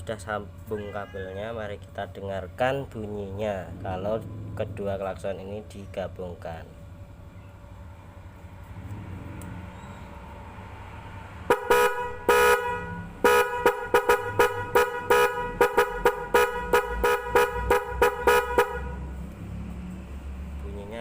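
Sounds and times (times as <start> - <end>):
electric horns honking: 11.4 - 19.3.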